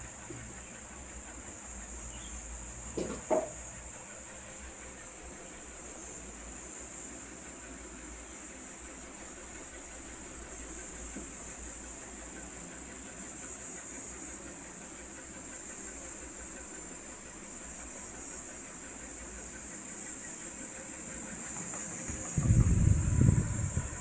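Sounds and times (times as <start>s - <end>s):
high-pitched hiss: 4.8s - 24.0s
loud low rumble: 22.1s - 24.0s.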